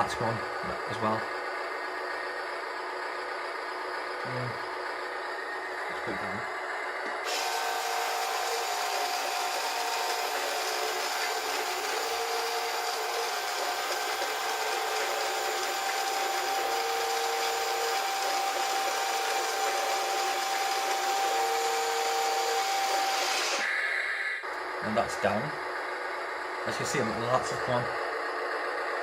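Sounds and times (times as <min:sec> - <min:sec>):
toy electric motor whirring: 0:07.2 - 0:23.9.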